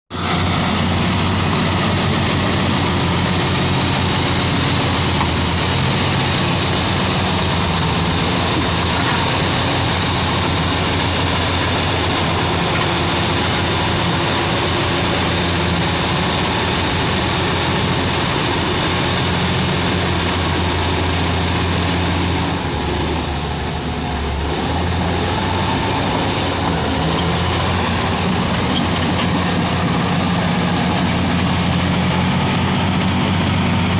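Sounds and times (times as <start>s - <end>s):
diesel engine idling: 25.2s - 33.9s.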